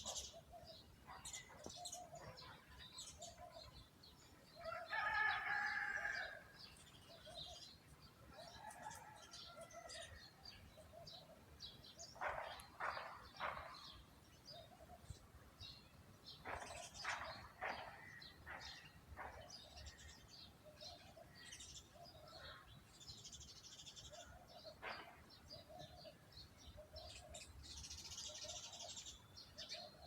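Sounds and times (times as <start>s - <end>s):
small birds chirping: 0.0s - 30.0s
rooster crowing: 4.6s - 6.5s.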